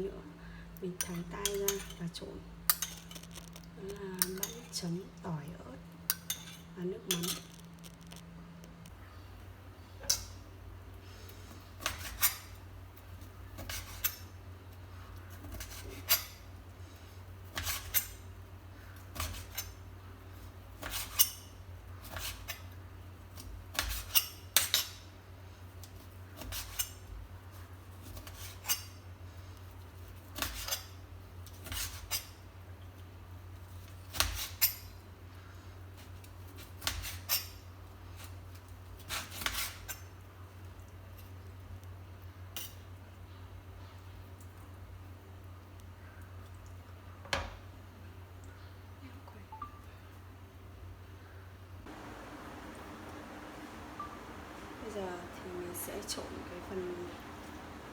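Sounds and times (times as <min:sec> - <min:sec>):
steady low hum: 0:51.8 - 0:57.9.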